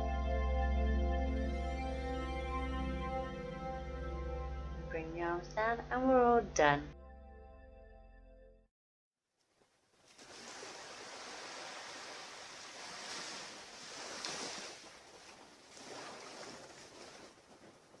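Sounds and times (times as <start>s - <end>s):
ocean surf washing on beach: 10.1s - 18.0s.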